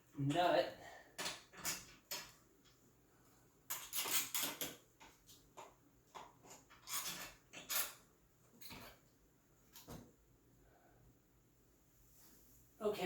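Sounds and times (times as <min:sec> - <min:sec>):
clinks and rattles of bike parts: 0:01.1 - 0:02.8, 0:03.7 - 0:09.1.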